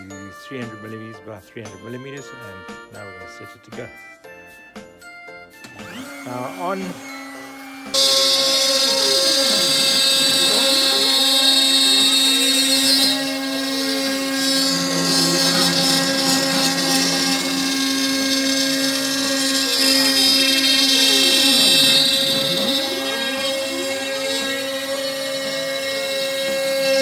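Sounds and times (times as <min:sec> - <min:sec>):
router spindle whine: 0:05.6 - 0:27.0
axis motors pitch sweeping: 0:05.7 - 0:27.0.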